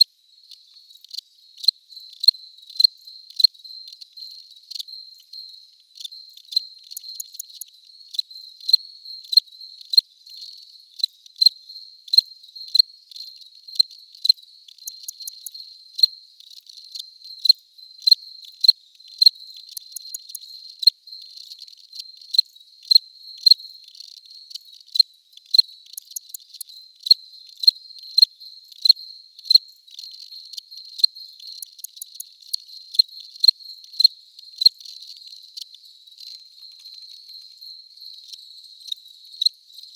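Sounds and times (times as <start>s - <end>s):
cricket chirping: 0.0s - 39.9s.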